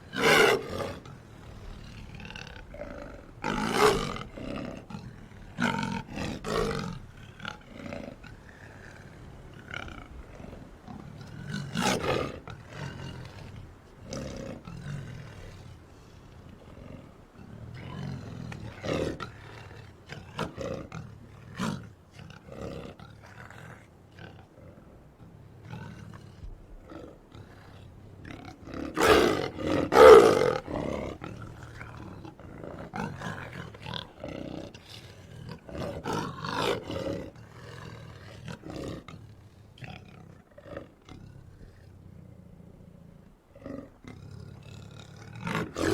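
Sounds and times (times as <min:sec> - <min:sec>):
big cat roaring and growling: 0:00.0 - 0:15.6, 0:25.7 - 0:39.2, 0:43.5 - 0:45.9.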